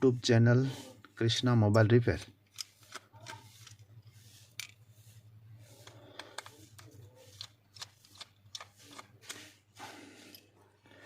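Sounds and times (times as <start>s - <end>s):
tools and plastic parts clicking: 2.1s - 4.8s, 5.7s - 9.6s.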